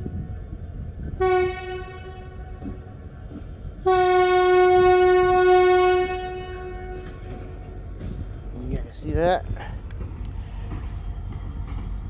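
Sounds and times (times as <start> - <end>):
train horn blasts: 1.2 - 2.8, 3.8 - 7.8.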